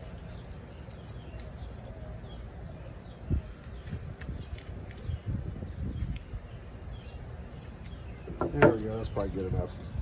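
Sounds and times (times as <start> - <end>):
birds chirping: 0.0 - 10.0
handling thumps and clicks: 8.2 - 9.5.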